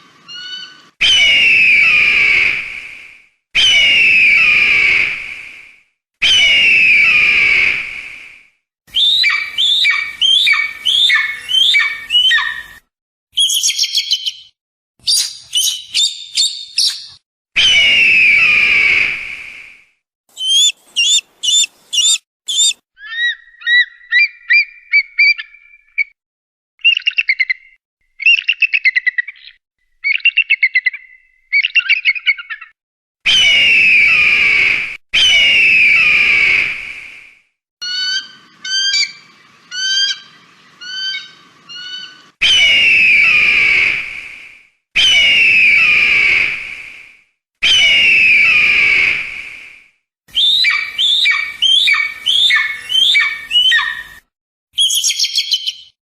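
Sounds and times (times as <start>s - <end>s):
kite calls: 20.3s - 22.8s.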